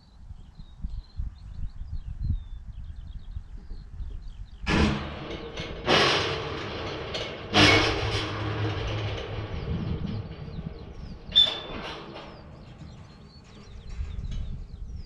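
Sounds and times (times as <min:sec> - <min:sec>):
sudden loud noises: 0:04.7 - 0:13.4.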